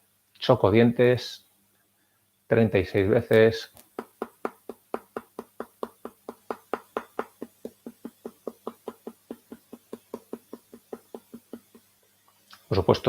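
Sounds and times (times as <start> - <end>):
teeth clicking together: 3.8 - 11.9.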